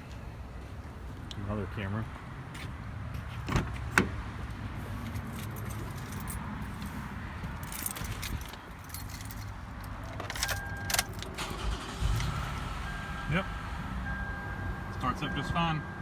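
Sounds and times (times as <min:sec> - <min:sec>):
car keys jangling: 0:07.5 - 0:12.1.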